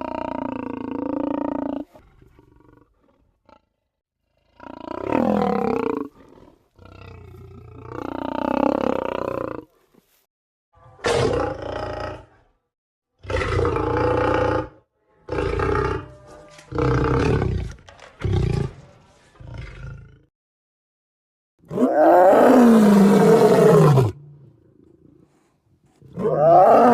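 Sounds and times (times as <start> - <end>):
large animal roars: 13.2 - 16.1, 16.7 - 18.8, 21.6 - 25.4, 26.0 - 26.9.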